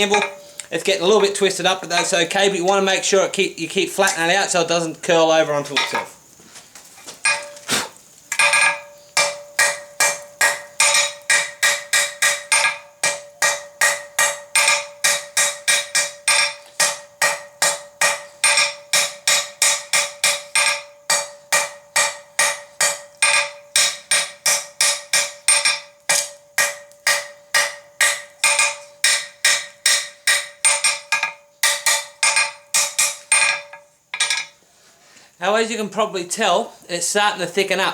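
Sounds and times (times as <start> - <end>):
anvil ringing: 0.0 - 0.4, 8.4 - 34.5
hammer striking on anvil: 0.0 - 0.4, 8.4 - 34.5.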